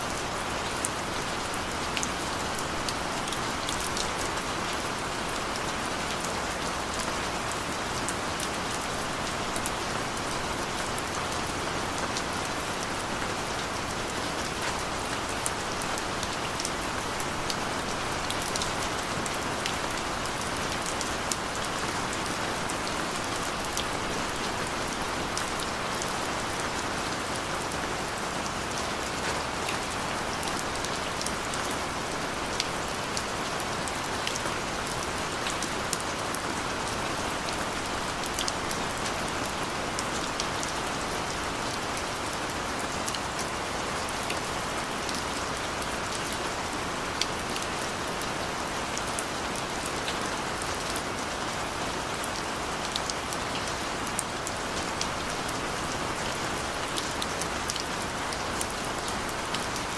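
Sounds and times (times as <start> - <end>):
gentle rain falling: 0.0 - 59.9.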